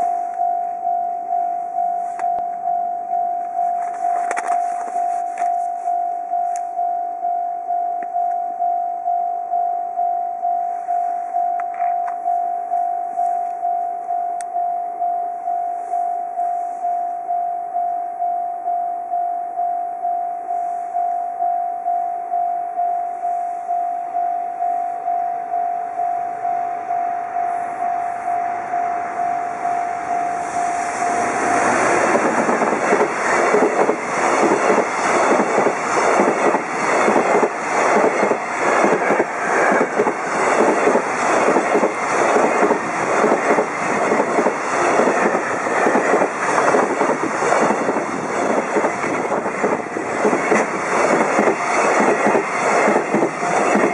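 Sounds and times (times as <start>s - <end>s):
level crossing alarm tone: 0.0s - 53.9s
train wheels clattering on rails: 31.2s - 53.9s.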